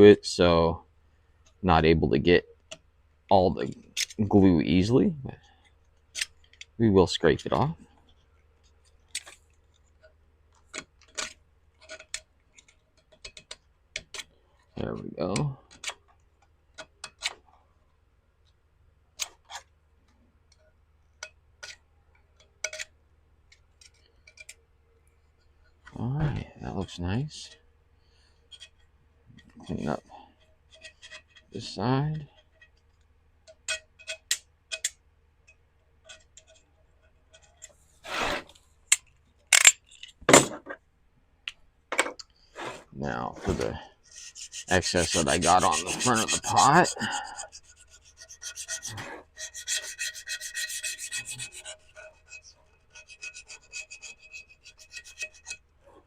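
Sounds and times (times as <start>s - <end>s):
razor blade scraping ceramic: 44.0s - 55.6s.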